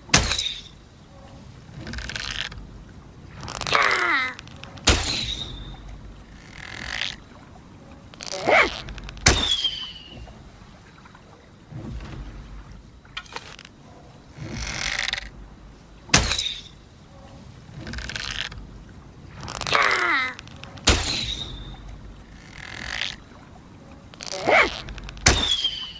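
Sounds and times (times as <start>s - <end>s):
arrow thwacks with ringing twang: 4.9s - 5.7s, 20.9s - 21.6s.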